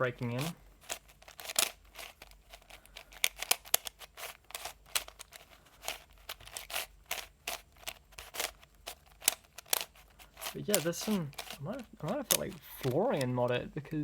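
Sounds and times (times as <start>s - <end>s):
puzzle cube plastic clacks: 0.1s - 13.6s.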